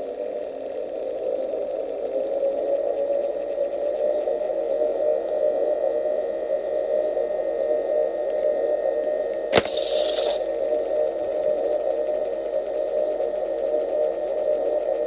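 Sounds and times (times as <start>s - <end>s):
sharp click: 9.6s - 10.4s
electronic humming drone: 9.6s - 15.0s.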